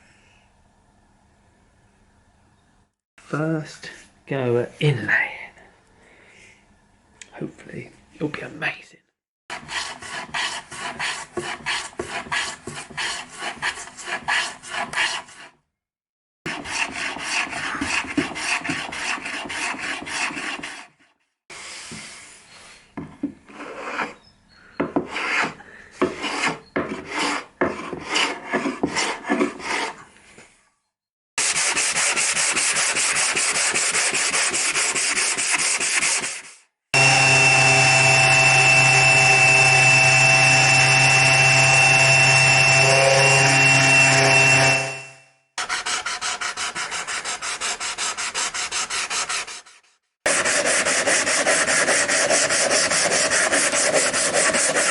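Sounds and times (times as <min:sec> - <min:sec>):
power tool motor whine: 0:37.0 - 0:45.2.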